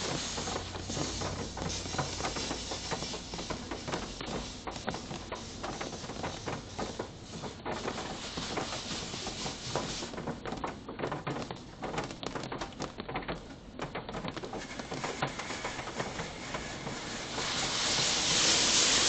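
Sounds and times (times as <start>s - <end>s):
water spray hitting car: 0.0s - 10.2s, 14.6s - 19.0s.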